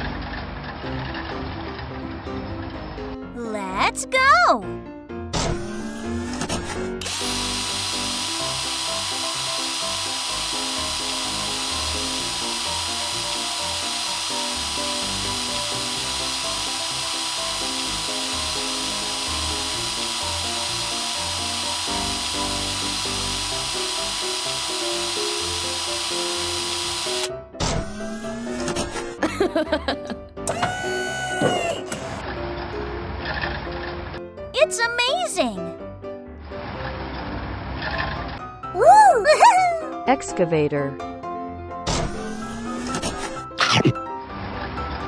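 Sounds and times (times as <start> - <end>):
background music: 3.3 - 32.7
power drill running: 5.5 - 32.2, 41.9 - 43.6.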